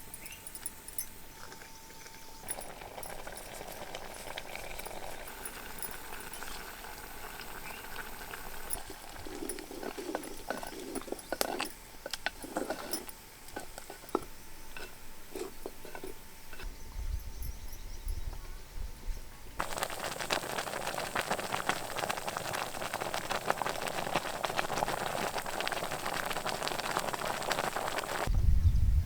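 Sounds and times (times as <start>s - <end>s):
sharp clinks and knocks: 0.0s - 6.8s
porridge bubbling in a pot: 2.4s - 16.1s, 19.6s - 28.3s.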